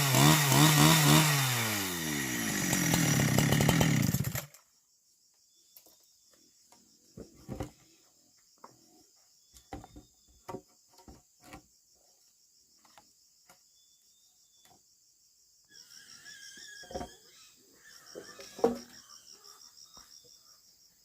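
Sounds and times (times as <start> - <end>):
crickets chirring: 4.5 - 21.0.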